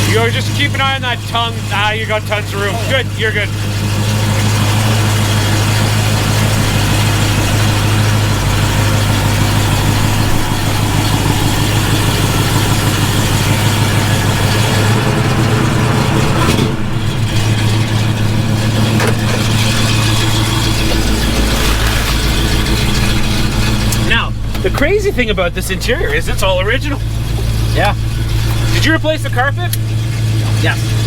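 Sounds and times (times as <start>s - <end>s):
car engine running: 0.0s - 31.0s.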